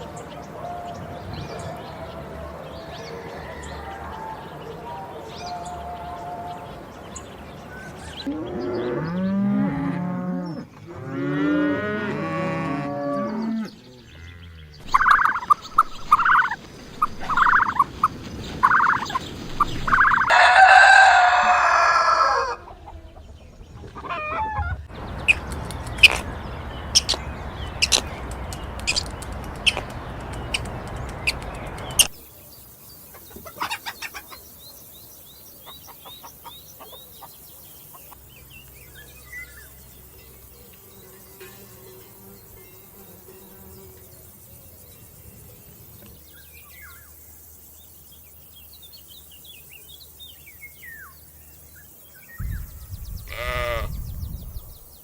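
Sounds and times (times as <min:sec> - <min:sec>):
cattle mooing: 0:08.3 - 0:14.8
chickens clucking: 0:14.8 - 0:32.2, 0:33.1 - 0:34.6, 0:35.6 - 0:38.2
loud crow-like call: 0:20.3 - 0:22.7, 0:53.3 - 0:53.9.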